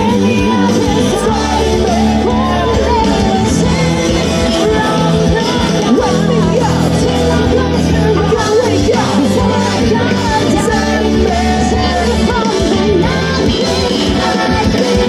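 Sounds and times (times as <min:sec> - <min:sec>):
person singing: 0:00.0 - 0:15.0
rock band playing live: 0:00.0 - 0:15.0.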